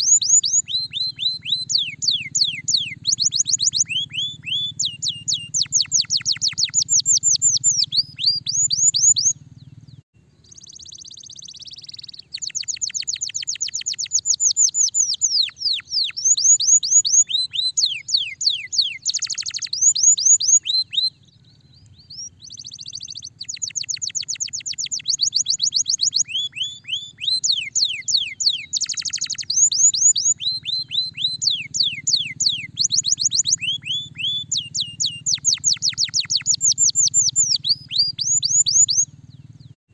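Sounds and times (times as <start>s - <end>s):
canary singing in trills: 0.0s - 39.8s.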